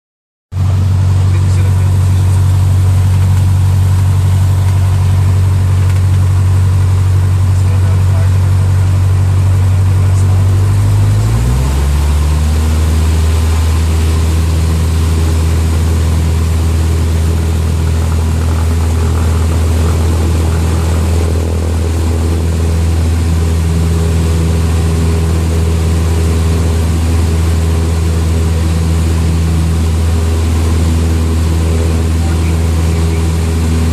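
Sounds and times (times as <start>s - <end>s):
propeller plane engine droning: 0.5s - 33.9s.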